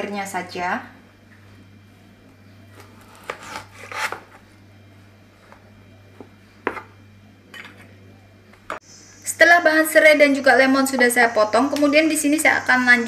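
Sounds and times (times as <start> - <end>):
knife cutting a lemon: 2.8 - 4.4.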